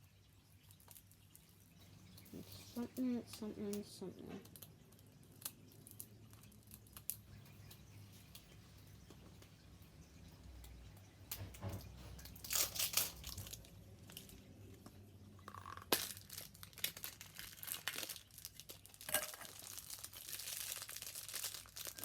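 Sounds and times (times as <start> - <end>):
packaging crinkling and tearing: 12.1 - 14.5, 15.4 - 22.0.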